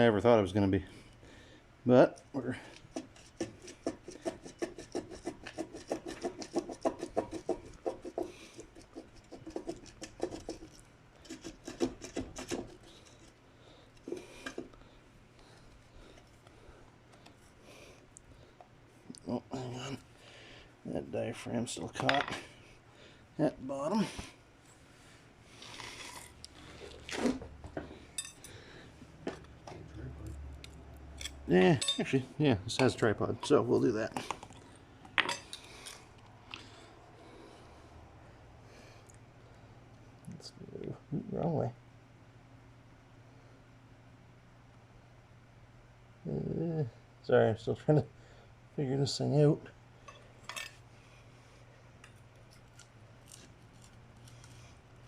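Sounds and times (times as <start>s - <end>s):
hand tools scraping metal: 2.8s - 13.3s
metal parts and tools clinking: 31.2s - 32.2s.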